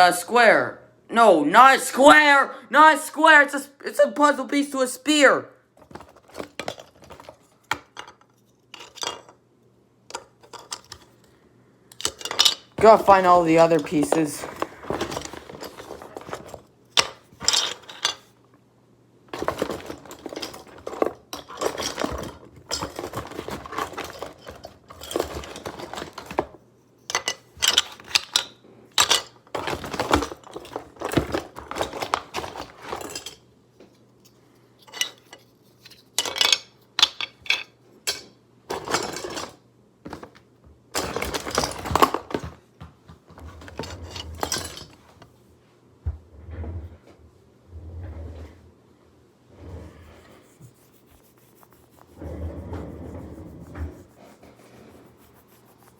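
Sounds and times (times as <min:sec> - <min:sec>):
plastic toys clattering: 0:05.8 - 0:09.4, 0:10.1 - 0:11.3, 0:11.9 - 0:18.4, 0:19.3 - 0:33.5, 0:34.8 - 0:42.6, 0:43.4 - 0:45.2.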